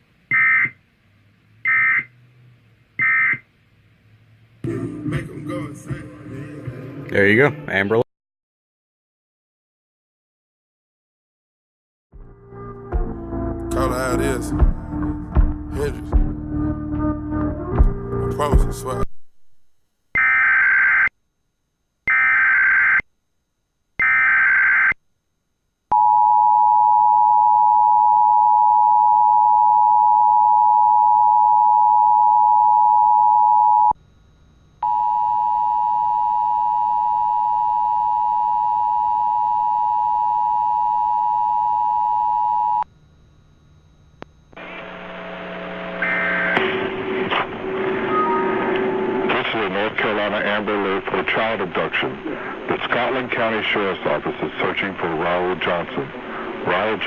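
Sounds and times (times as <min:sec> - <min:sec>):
two-tone attention signal: 0:48.0 - 0:49.3.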